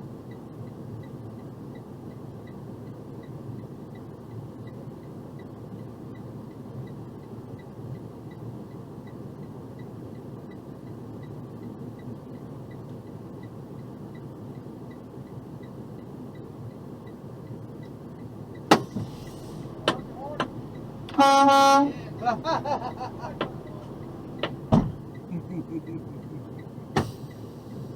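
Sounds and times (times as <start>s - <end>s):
faint regular ticking: 1.7s - 21.2s, 21.9s - 27.9s
truck engine rumble: 18.0s - 27.9s.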